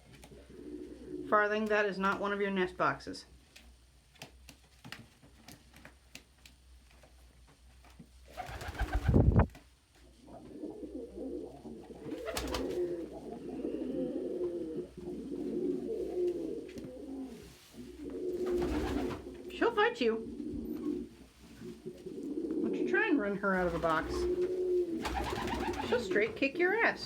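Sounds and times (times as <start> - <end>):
pigeons cooing: 0.2 - 1.3, 10.1 - 19.5, 20.2 - 26.3.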